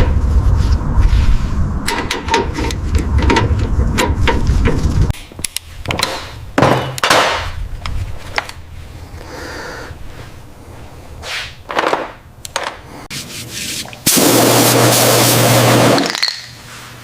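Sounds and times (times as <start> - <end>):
low rumble: 0.0 - 5.1.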